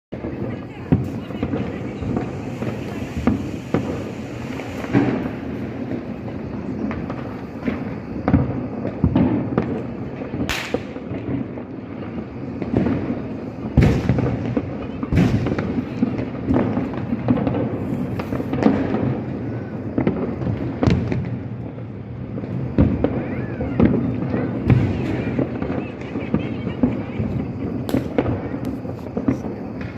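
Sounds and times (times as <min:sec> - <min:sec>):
firecracker sharp bangs: 0:00.1 - 0:29.9.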